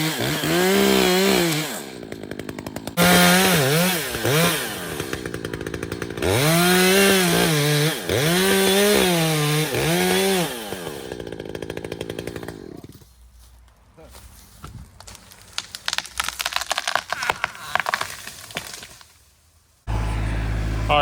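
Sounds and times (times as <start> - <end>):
chainsaw revving and idling: 0.0 - 13.1, 19.9 - 21.0.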